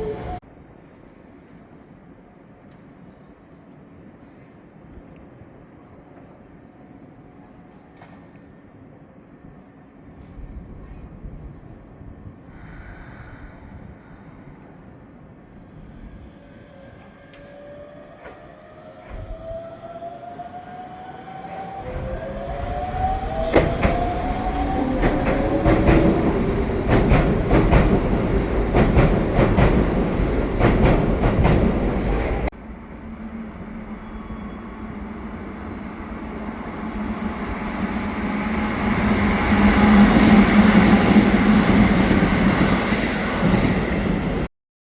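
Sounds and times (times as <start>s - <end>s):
train low hum: 0.0s - 44.5s
train wheels clicking over rail joints: 21.8s - 32.5s.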